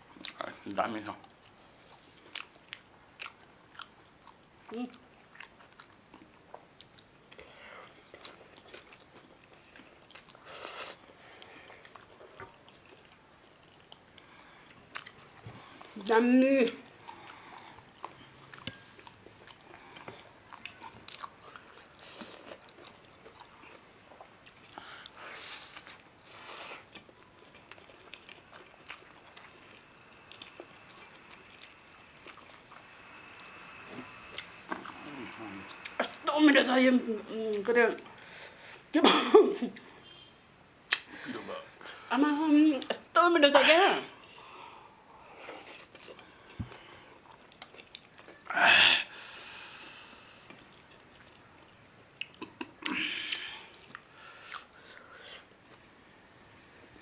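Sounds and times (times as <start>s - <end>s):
person chewing food: 1.2s - 16.0s, 16.7s - 36.2s, 44.2s - 49.2s, 50.1s - 55.9s.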